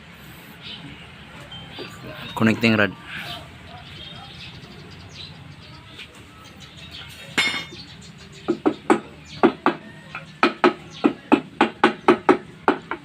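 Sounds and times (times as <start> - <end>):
sharp metal clinks: 7.2 - 7.9.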